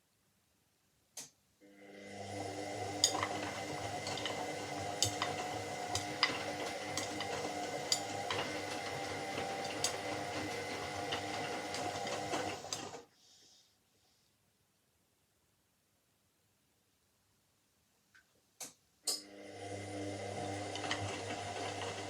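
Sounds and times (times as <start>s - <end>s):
washing machine hum: 1.6s - 13.1s, 19.2s - 22.0s
water sloshing in washing machine: 19.8s - 22.0s.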